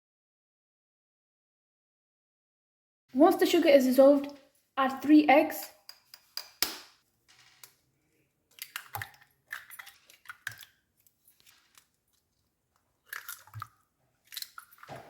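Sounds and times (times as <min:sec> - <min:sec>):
eggshells cracking: 0:08.5 - 0:10.8, 0:12.9 - 0:15.0.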